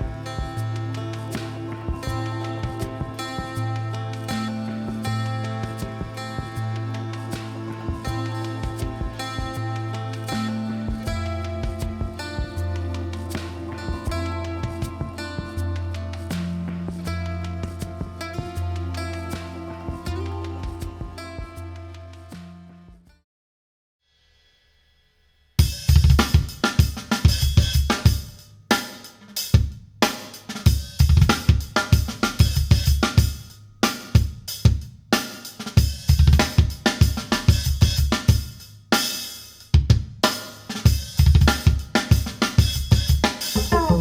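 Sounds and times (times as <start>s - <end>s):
drum kit music through speakers: 0.0s - 21.7s, 25.6s - 44.0s.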